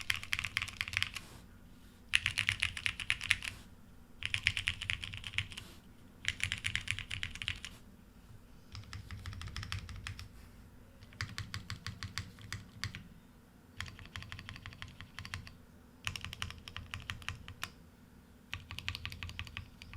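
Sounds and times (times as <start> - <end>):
mechanical keyboard typing: 0.0 - 1.3, 2.1 - 3.6, 4.2 - 5.6, 6.2 - 7.8, 8.7 - 10.3, 11.0 - 13.0, 13.8 - 17.8, 18.5 - 19.9.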